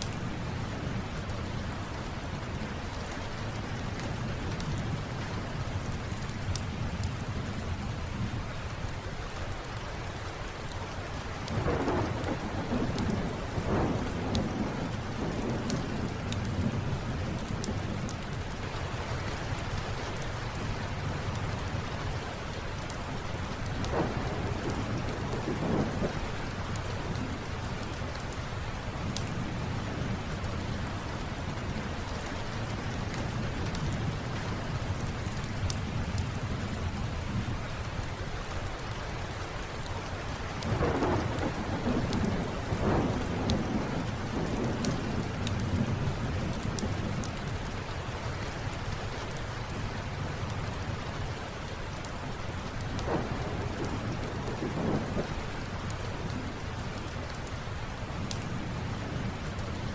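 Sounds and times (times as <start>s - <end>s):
heavy rain: 0.0s - 59.9s
thunder rumbling: 11.4s - 37.6s, 40.6s - 47.6s, 52.6s - 59.9s.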